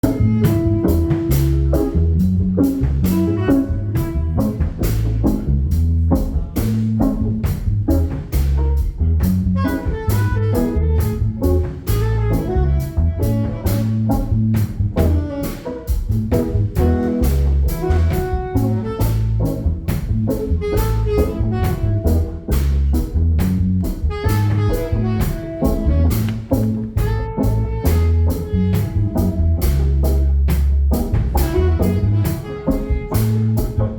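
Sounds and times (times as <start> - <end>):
bass line: 0.0 - 33.9
drum kit beat: 0.0 - 33.9.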